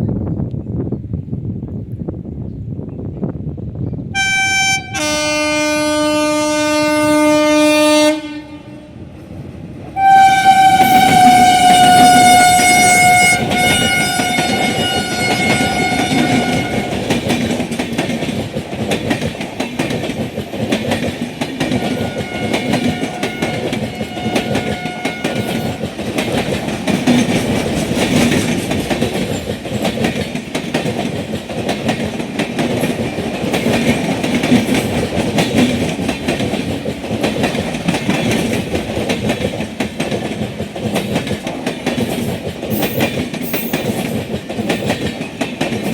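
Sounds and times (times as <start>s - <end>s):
locomotive horn: 4.2s - 9.0s, 10.0s - 17.0s, 21.8s - 25.9s
train wheels clattering over rail joints: 10.4s - 45.9s.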